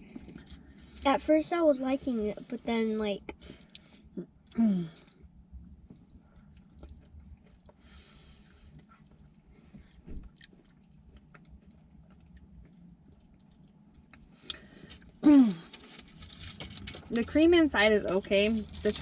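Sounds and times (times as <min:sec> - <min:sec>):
quiet chewing: 0:00.0 - 0:01.0, 0:03.3 - 0:16.0.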